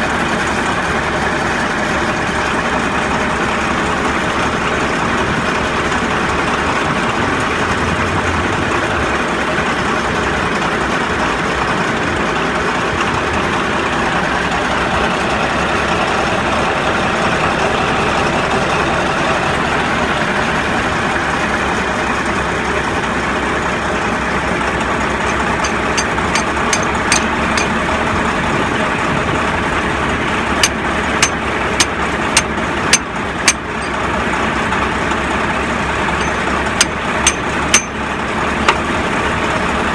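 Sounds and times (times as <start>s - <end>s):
bulldozer diesel engine running: 0.0s - 39.9s
sharp knocks: 25.3s - 27.8s, 30.6s - 34.0s, 36.2s - 38.0s.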